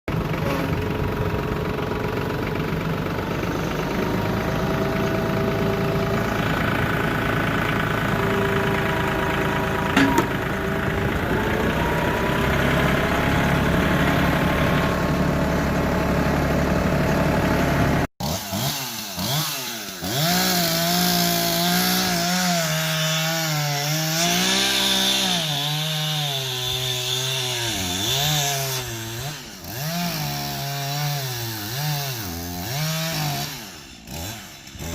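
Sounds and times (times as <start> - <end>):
chainsaw cutting wood: 9.6 - 34.9.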